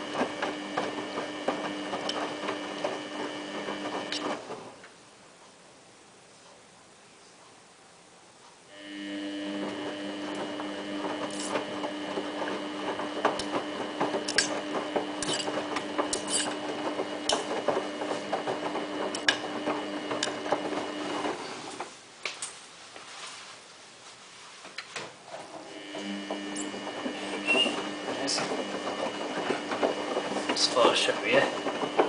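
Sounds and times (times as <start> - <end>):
washing machine motor humming: 0.0 - 4.8, 8.7 - 22.0, 25.4 - 32.0.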